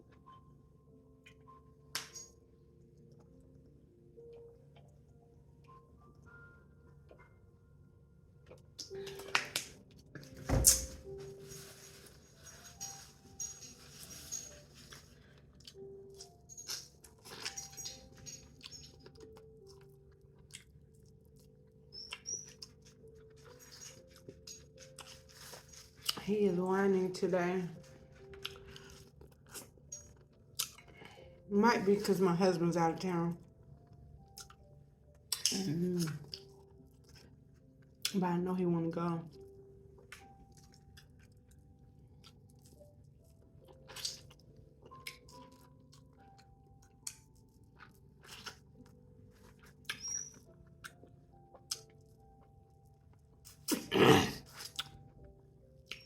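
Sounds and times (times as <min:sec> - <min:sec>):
person chewing food: 0:11.0 - 0:26.2, 0:27.8 - 0:31.4, 0:33.5 - 0:38.1, 0:39.3 - 0:55.1
dog whining: 0:49.9 - 0:50.5
wet mouth clicks and smacks: 0:54.6 - 0:55.0.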